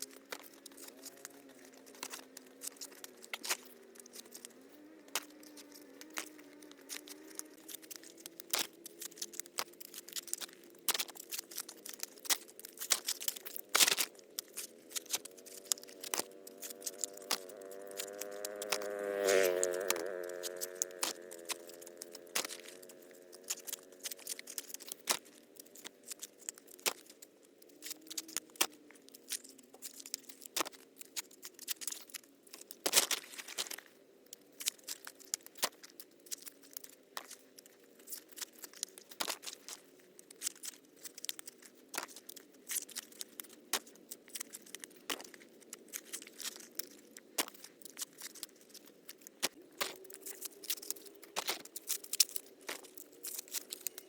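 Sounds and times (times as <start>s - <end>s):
dry corn husks tearing: 0.0s - 54.0s.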